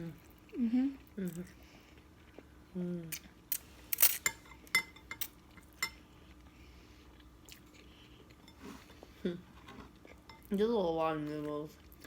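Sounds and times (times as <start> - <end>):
faint eating sounds: 0.0 - 12.0
forks clinking against glass bowls: 4.0 - 6.0.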